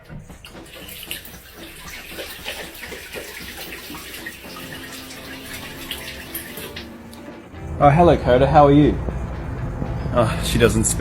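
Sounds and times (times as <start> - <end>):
running water splashing: 0.0 - 7.6.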